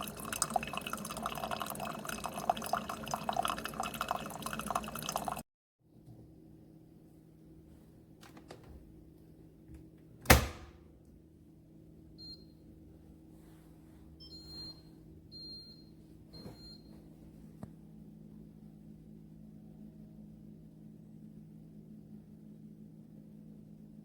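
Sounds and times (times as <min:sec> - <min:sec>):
coffee maker humming: 0:00.0 - 0:05.4.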